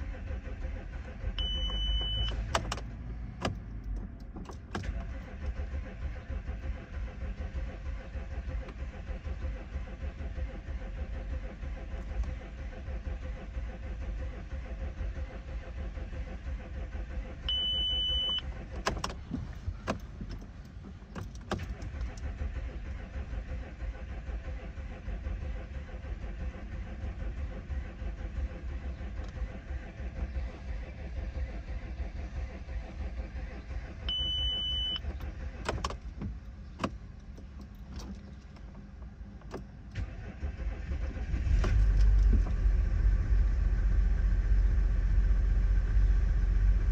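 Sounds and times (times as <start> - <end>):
diesel engine cranking and running: 0.0 - 46.9
short beep: 1.4 - 2.4, 17.5 - 18.4, 34.1 - 35.0.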